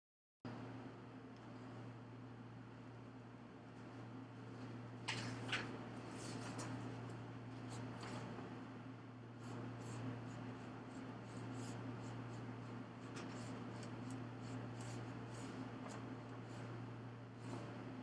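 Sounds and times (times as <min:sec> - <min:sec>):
steady low hum: 0:00.5 - 0:18.0
light rustling and scratching: 0:03.8 - 0:08.5.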